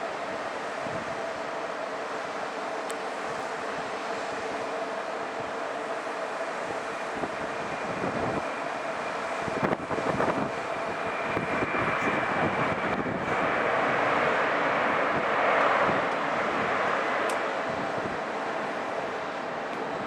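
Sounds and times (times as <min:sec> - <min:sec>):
jet engines roaring with whine: 0:00.0 - 0:20.0
wind buffeting microphone: 0:00.7 - 0:01.4, 0:07.1 - 0:08.5, 0:09.3 - 0:18.4.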